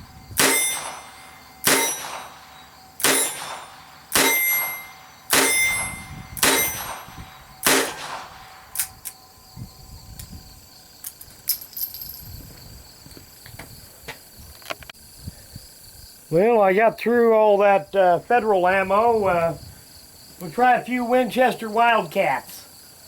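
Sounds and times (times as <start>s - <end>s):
revolver shots: 0.4s - 8.6s.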